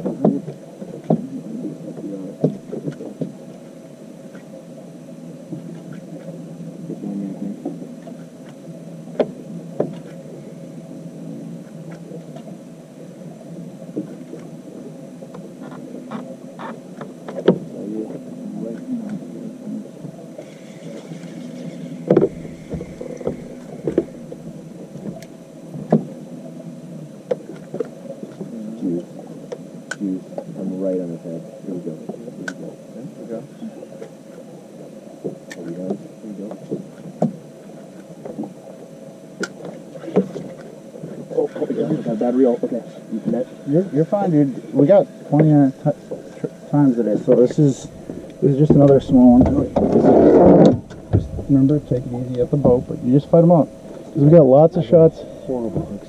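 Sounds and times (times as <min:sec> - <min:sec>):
knocks against boat: 0:00.0 - 0:01.4, 0:22.0 - 0:24.3, 0:47.3 - 0:53.0, 0:55.6 - 0:56.0
wind and water rushing: 0:42.4 - 0:56.0.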